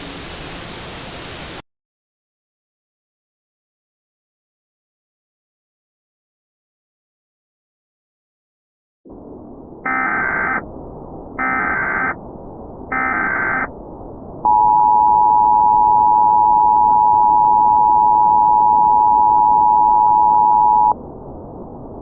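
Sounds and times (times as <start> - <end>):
constant hiss: 0.0 - 1.6
buzzing data bursts: 9.8 - 10.6, 11.4 - 12.2, 12.9 - 13.7.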